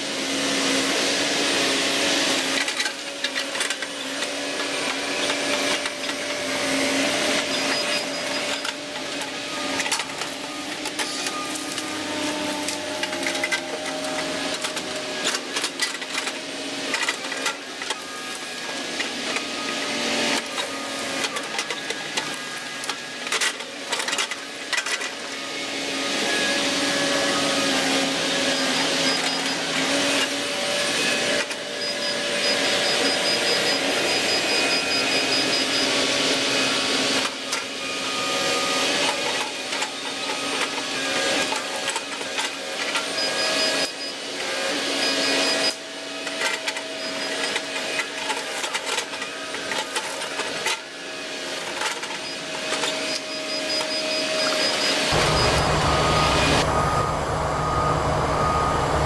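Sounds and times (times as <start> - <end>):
excavator engine and hydraulics: 0.0 - 59.0
hydraulic whining tones: 52.3 - 59.0
deep engine hum: 55.1 - 59.0.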